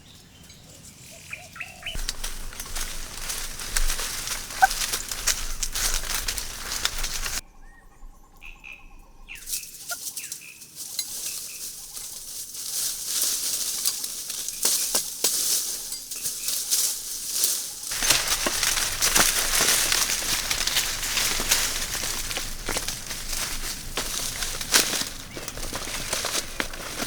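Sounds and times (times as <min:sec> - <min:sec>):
bird chirps: 0:00.0 - 0:12.2
rustling and scraping: 0:01.9 - 0:07.4, 0:09.4 - 0:27.0.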